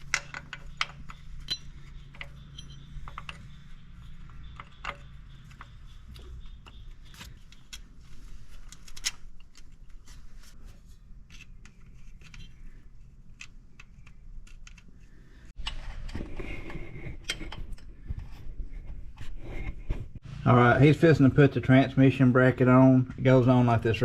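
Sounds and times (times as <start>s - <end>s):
metallic clinks of hand tools: 0.1s - 3.7s.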